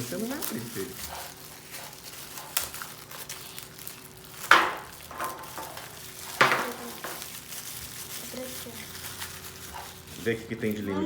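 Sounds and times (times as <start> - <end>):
packaging tearing with rustle: 0.0 - 10.9.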